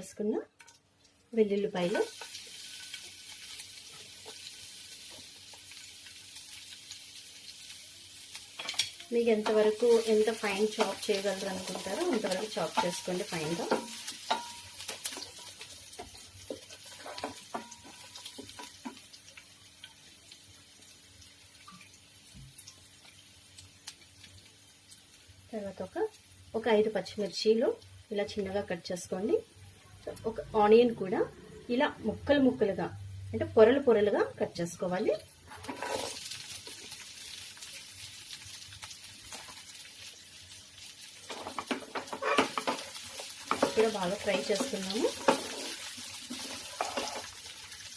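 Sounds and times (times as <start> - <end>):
seeds and garlic sizzling in oil: 0.0 - 47.9
spoon knocking in a pan: 10.6 - 19.0.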